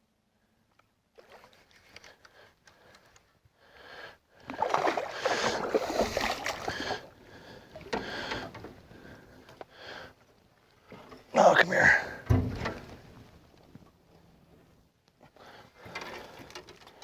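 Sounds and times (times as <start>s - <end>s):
water splashing beside boat: 4.4s - 9.5s.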